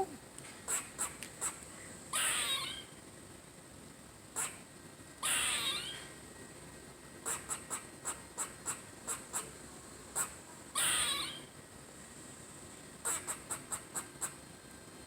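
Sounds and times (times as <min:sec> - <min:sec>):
squirrel chirping: 0:00.7 - 0:03.0, 0:04.4 - 0:04.6, 0:05.2 - 0:06.1, 0:07.2 - 0:11.5, 0:13.0 - 0:14.4.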